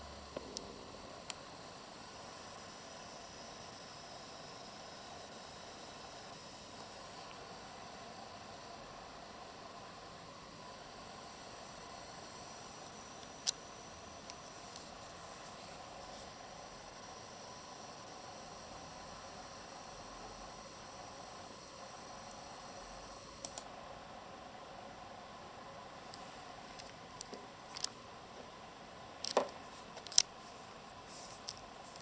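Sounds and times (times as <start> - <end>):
high-pitched coil whine hiss: 0.0 - 32.0
sharp clicks: 23.4 - 23.7.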